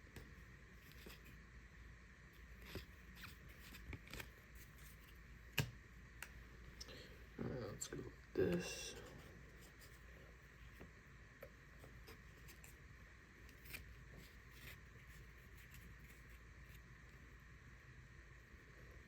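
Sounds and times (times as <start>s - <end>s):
cards and packaging handled: 0.8s - 1.4s, 2.5s - 6.4s, 13.4s - 16.8s.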